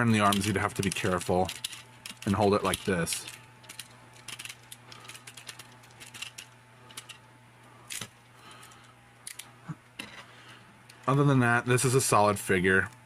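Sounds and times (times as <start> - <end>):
plastic toy parts clicking: 0.2 - 7.2, 9.2 - 9.5.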